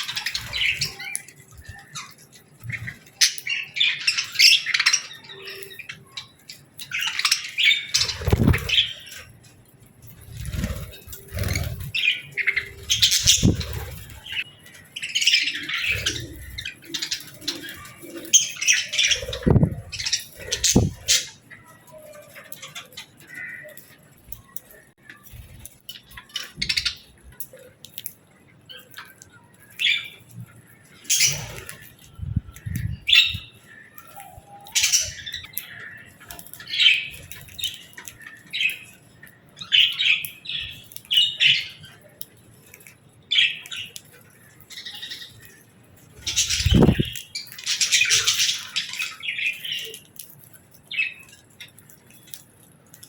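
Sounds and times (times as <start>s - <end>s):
budgerigars chirping and squawking: 0.0s - 9.4s, 10.4s - 24.9s, 28.8s - 39.0s, 46.2s - 50.0s
wing flutter: 7.9s - 14.4s, 46.2s - 49.2s.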